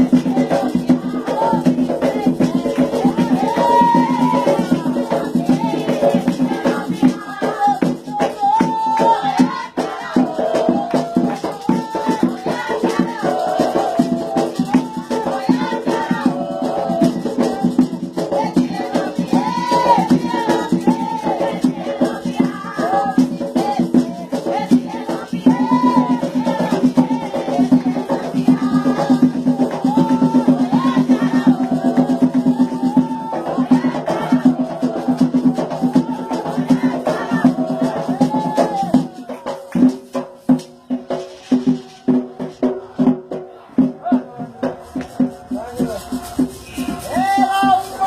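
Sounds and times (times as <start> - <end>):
rattle shaken rhythmically: 0.0 - 43.1, 43.9 - 48.0
voices chanting together: 0.0 - 48.0.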